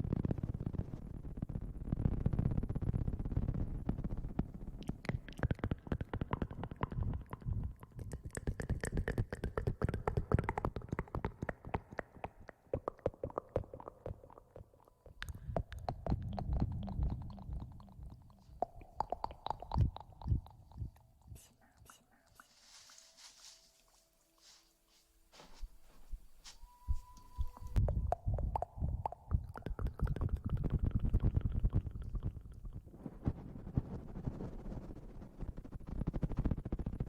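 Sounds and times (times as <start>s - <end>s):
low muffled rumble: 15.2s - 19.0s
close rustling and crackling: 21.3s - 27.8s.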